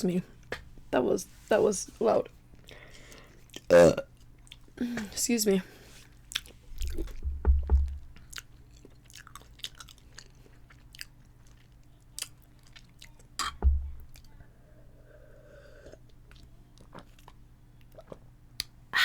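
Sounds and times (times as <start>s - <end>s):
person chewing food: 2.5s - 4.8s, 6.0s - 14.4s, 15.5s - 18.7s
low thumps: 6.7s - 8.2s, 13.4s - 14.2s.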